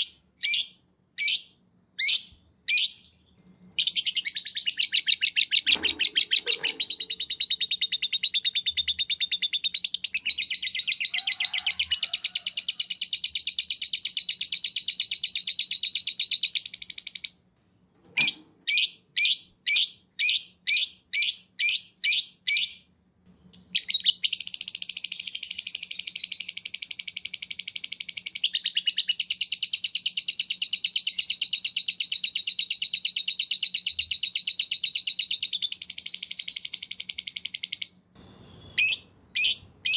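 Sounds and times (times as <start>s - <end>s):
bird trill of high chirps: 0.4s - 17.3s, 23.5s - 39.9s
downward-sweeping bird whistles: 28.4s - 39.9s.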